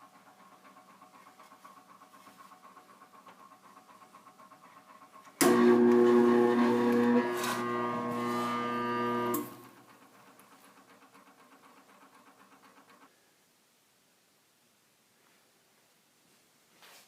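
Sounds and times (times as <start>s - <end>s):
dryer motor buzzing: 1.5s - 10.0s.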